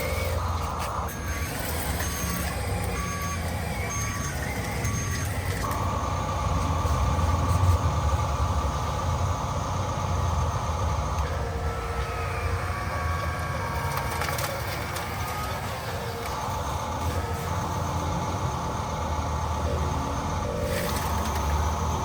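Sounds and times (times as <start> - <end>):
electric motor whine and rumble: 0.0 - 22.0
electronic reversing beeper: 0.0 - 22.0.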